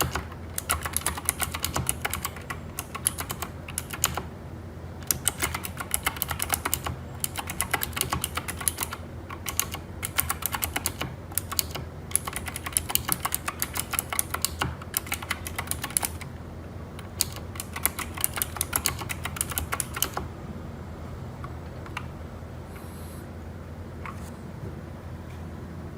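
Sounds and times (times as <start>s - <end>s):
mechanical keyboard key clicks: 0.0s - 4.2s, 5.0s - 16.3s, 17.0s - 20.3s.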